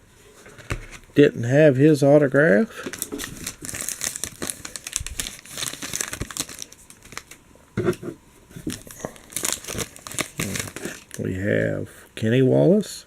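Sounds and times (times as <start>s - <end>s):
foil wrapper crinkling and tearing: 2.8s - 7.4s, 8.6s - 11.3s.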